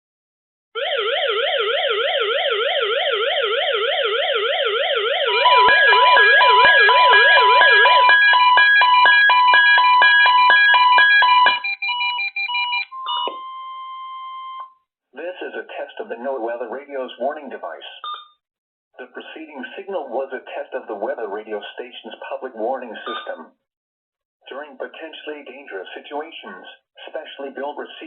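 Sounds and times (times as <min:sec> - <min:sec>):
warbling siren-like tone: 0:00.8 - 0:11.7
steady warning tone: 0:05.2 - 0:11.9
rapid electronic beeps: 0:05.3 - 0:13.8, 0:23.1 - 0:23.4.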